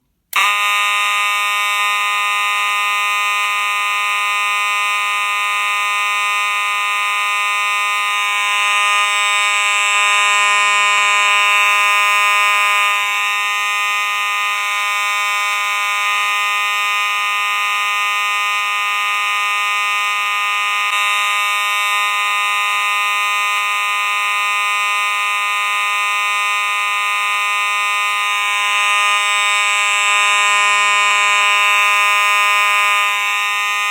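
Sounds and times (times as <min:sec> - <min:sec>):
fire alarm tone: 0:00.4 - 0:33.9.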